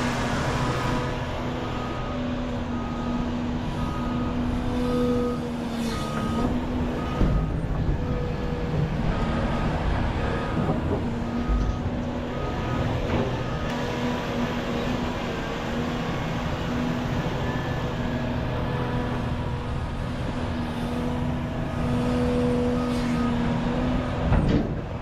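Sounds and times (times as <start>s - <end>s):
heavy diesel machinery running: 0.0s - 25.0s.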